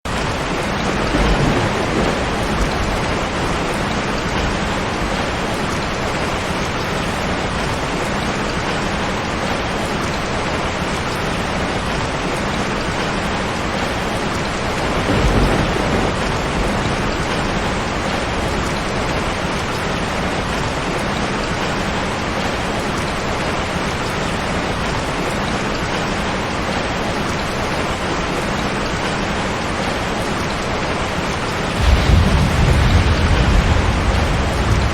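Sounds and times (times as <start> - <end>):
heavy rain on a tin roof: 0.0 - 34.9
thunder rumbling: 0.1 - 7.1, 13.8 - 20.8, 31.4 - 34.9.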